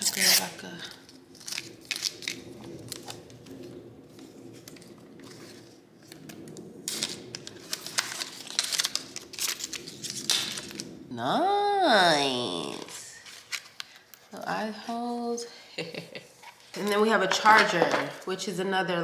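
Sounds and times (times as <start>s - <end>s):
packaging crinkling and rustling: 0.0s - 11.1s, 12.6s - 14.3s.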